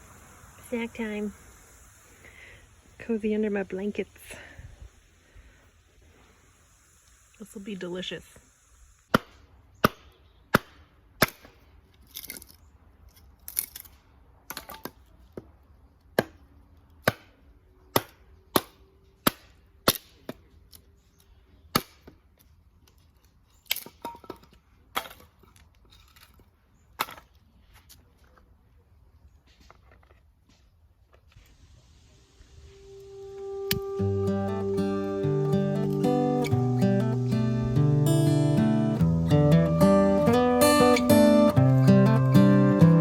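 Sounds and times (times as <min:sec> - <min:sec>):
wood fire crackling: 0:00.0 - 0:09.1, 0:32.0 - 0:43.0.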